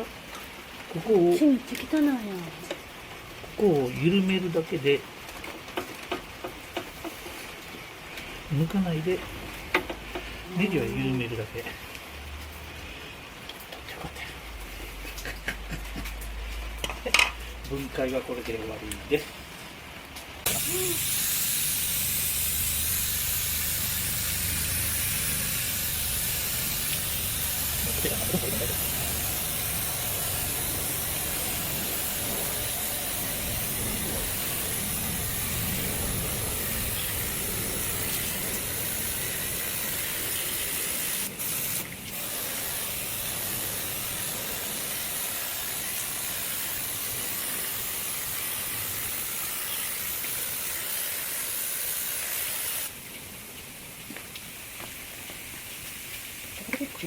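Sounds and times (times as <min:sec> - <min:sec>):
water spraying hiss: 0:20.4 - 0:57.0.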